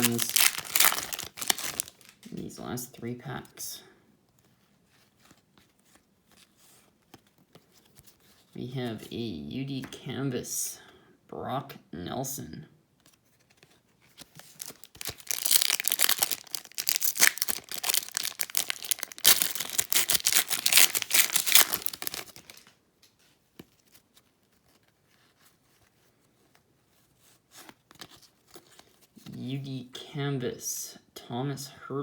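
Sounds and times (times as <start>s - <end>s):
wrapper tearing and crinkling: 0.0s - 2.3s, 14.4s - 22.7s.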